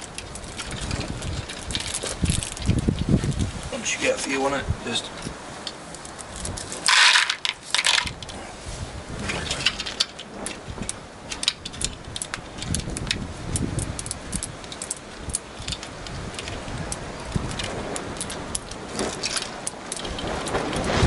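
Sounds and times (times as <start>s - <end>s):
steel balls clicking: 5.6s - 8.4s, 9.6s - 20.9s.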